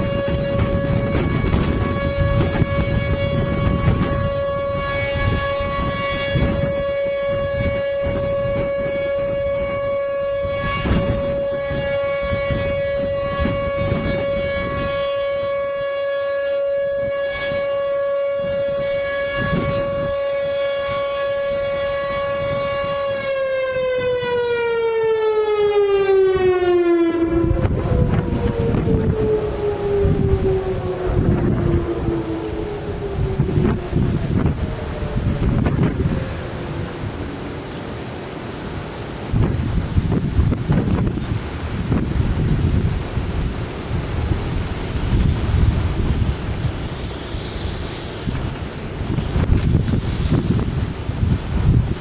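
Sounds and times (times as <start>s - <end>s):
tornado siren winding down: 0.0s - 52.0s.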